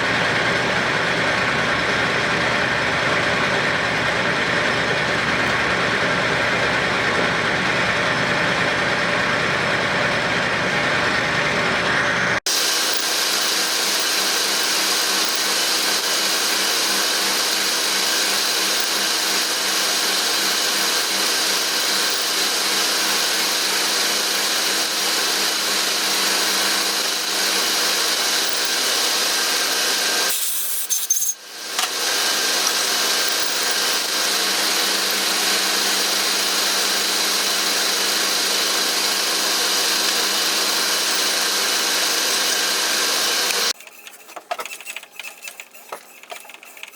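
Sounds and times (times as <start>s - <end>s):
power tool grinding metal: 12.5s - 46.9s.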